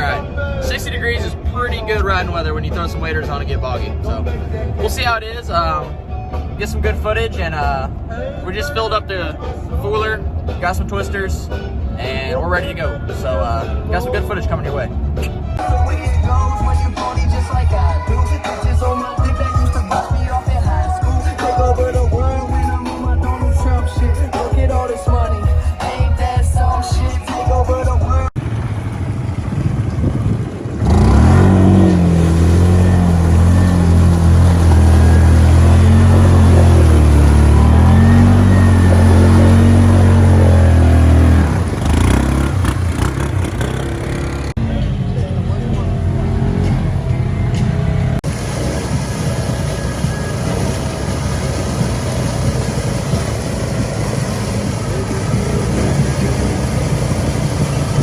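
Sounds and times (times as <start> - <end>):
engine rumbling and revving: 0.0 - 58.0
noisy hiss: 48.3 - 58.0.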